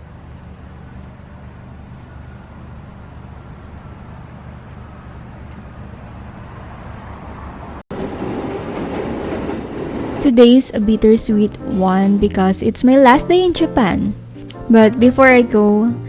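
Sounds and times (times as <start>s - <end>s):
low rumble of moving vehicle: 0.0s - 8.5s.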